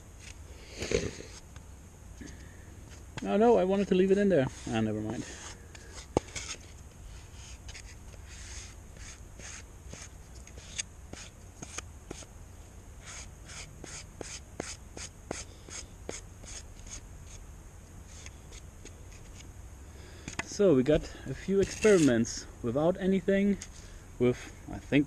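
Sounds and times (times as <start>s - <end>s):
low steady hum: 0.0s - 25.0s
squeegee scraping strokes: 4.0s - 12.3s, 21.6s - 22.2s.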